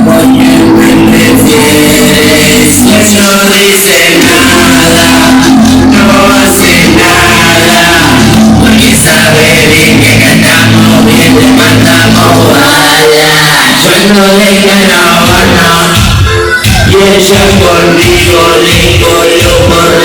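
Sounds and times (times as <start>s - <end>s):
live cumbia music: 0.0s - 20.0s
person singing: 0.0s - 20.0s.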